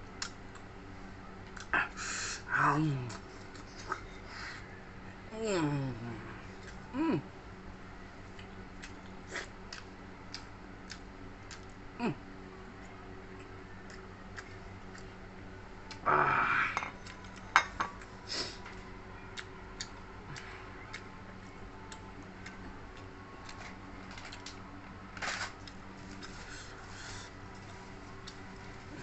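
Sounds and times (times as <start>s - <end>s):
steady low hum: 0.0s - 29.0s
chewing clicks and smacks: 0.2s - 0.7s, 8.3s - 11.8s, 13.4s - 15.1s.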